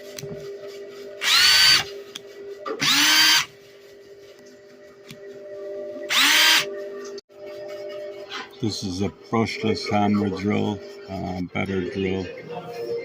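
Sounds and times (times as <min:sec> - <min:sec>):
drill motor spinning up: 0:01.2 - 0:01.9, 0:02.8 - 0:03.5, 0:06.1 - 0:06.7.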